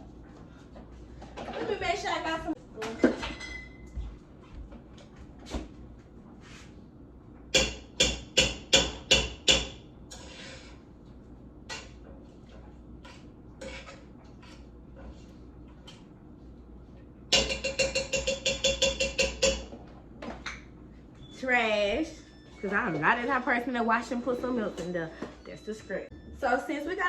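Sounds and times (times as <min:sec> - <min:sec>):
kitchen utensil knocking: 0:17.3 - 0:19.7.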